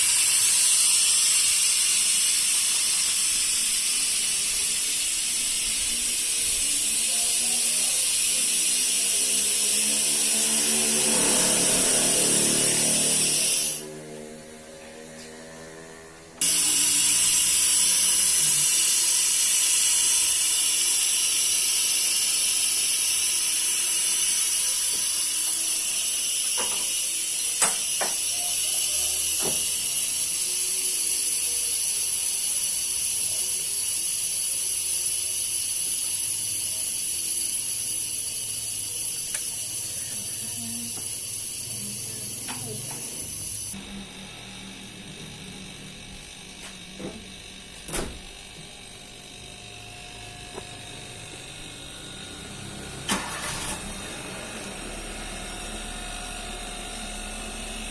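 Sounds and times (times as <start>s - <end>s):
hissing rush of air: 0.0s - 13.9s.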